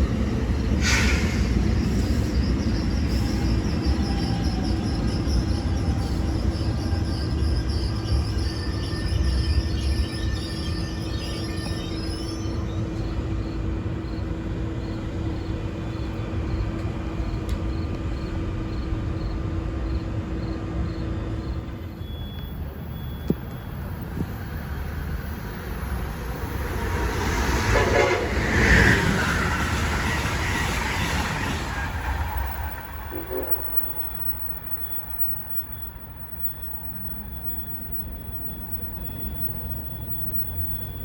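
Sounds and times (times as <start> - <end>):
rush of passing train: 0.0 - 41.0.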